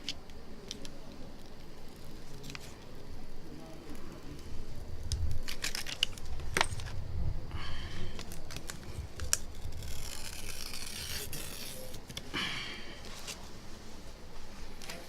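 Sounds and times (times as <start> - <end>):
plastic film crinkling: 3.6 - 7.0, 7.8 - 12.3
small blade scraping: 9.5 - 12.2.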